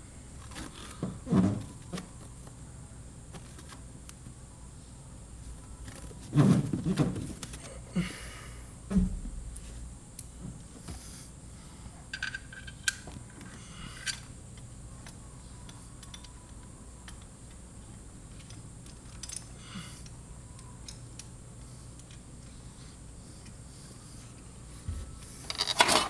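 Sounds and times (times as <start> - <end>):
low steady hum: 0.0 - 26.0
thump: 8.9 - 9.4.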